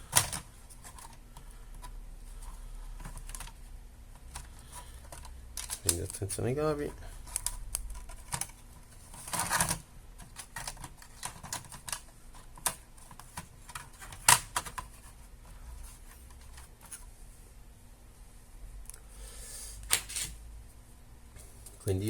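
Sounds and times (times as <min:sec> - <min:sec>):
laptop parts clicking: 0:00.0 - 0:02.0, 0:04.2 - 0:06.2, 0:07.2 - 0:14.9.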